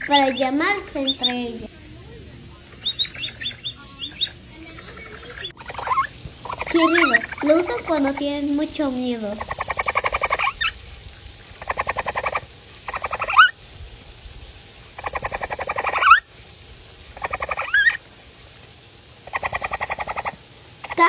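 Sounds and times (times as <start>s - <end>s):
capybara squealing: 0.0s - 1.4s, 2.8s - 8.4s, 9.3s - 10.8s, 11.6s - 13.6s, 15.0s - 16.3s, 17.2s - 18.0s, 19.2s - 21.0s.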